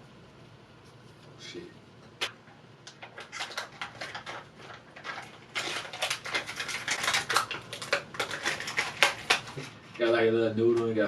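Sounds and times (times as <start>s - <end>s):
plastic wrapper crinkling: 2.9s - 9.8s.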